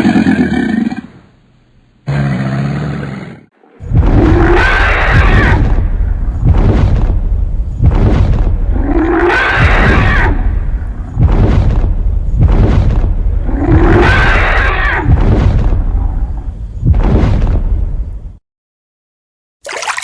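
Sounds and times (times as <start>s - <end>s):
large animal growling and roaring: 2.1s - 6.0s, 8.6s - 11.3s, 13.4s - 16.5s.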